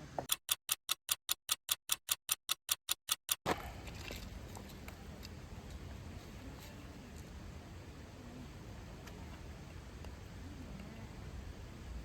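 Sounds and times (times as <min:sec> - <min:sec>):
faint outdoor background noise: 0:00.0 - 0:00.4, 0:03.4 - 0:12.0
clock ticking: 0:00.2 - 0:03.5.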